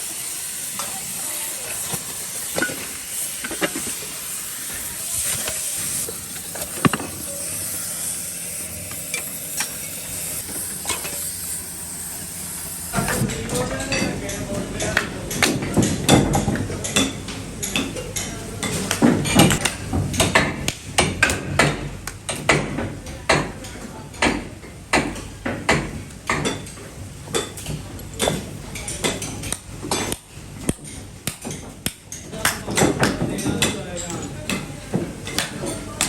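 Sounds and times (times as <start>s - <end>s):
clanking metal: 1.8s - 7.8s.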